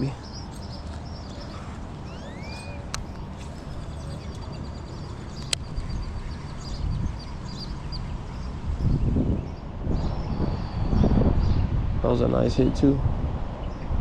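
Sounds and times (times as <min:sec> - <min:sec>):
birds chirping: 0:00.0 - 0:12.2
wind on microphone: 0:00.0 - 0:14.0
sharp clicks: 0:05.4 - 0:05.9.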